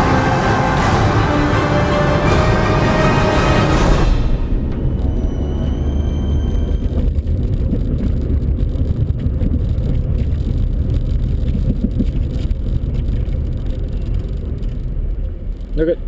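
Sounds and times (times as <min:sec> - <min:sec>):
car driving rumble: 0:04.0 - 0:16.0.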